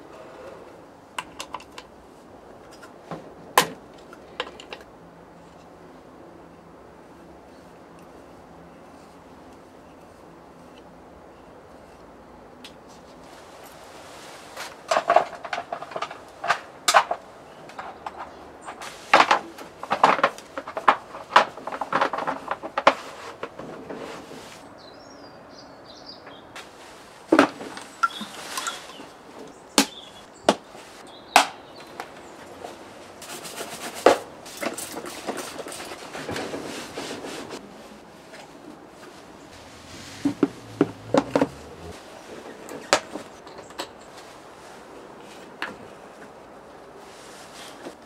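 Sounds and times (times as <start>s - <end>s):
metal tools knocking and clinking: 27.8s - 29.0s.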